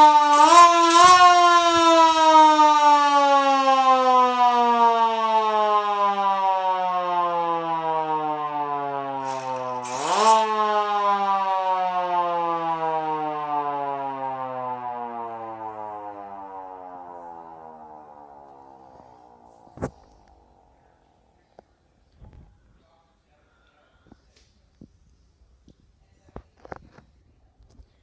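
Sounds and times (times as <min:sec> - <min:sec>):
siren winding down: 0:00.0 - 0:21.1.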